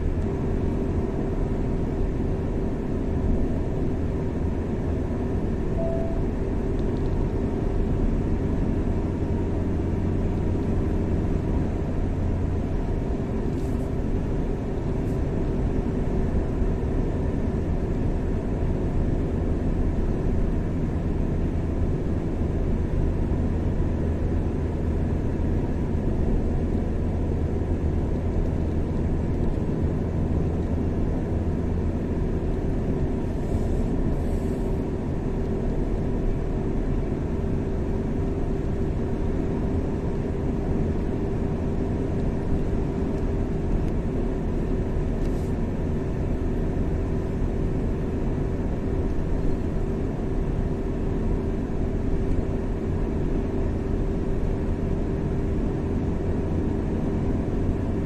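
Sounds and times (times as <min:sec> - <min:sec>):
faint steady whine: 0:00.0 - 0:10.6
car engine and tyre noise: 0:00.0 - 0:58.0.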